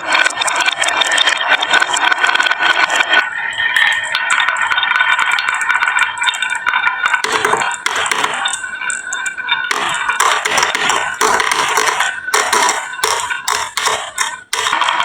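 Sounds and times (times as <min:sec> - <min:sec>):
marbles rattling down wooden run: 0:07.2 - 0:14.9.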